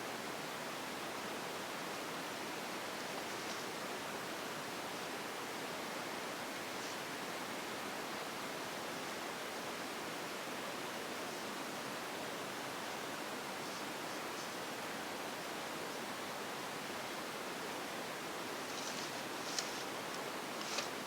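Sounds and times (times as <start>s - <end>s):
steady background hiss: 0.0s - 21.0s
faint short scratches: 18.6s - 20.0s.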